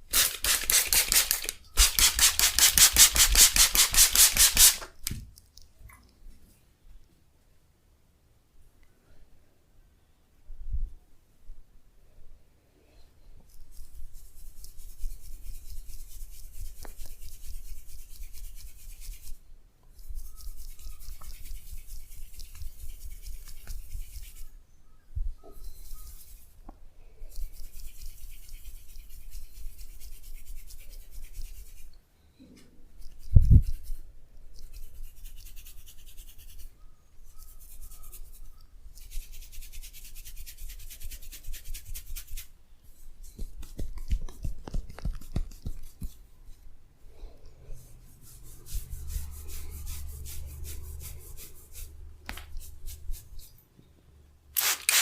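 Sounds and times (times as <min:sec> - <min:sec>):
hands rubbing over body: 0:20.0 - 0:24.5, 0:43.2 - 0:46.3, 0:47.8 - 0:53.5.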